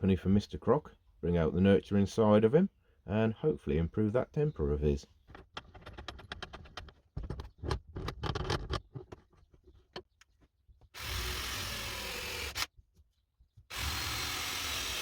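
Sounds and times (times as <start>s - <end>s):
clicks and knocks of hand work: 5.3s - 10.9s
power tool running: 11.0s - 12.7s, 13.7s - 15.0s.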